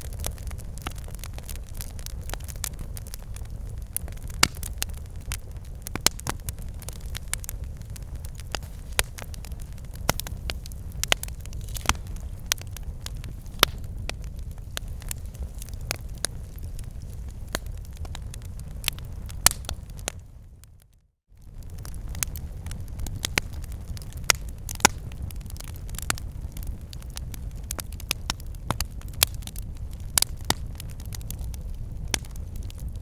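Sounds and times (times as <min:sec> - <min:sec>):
campfire wood crackling and popping: 0:00.0 - 0:33.0
low fire rumble: 0:00.0 - 0:33.0.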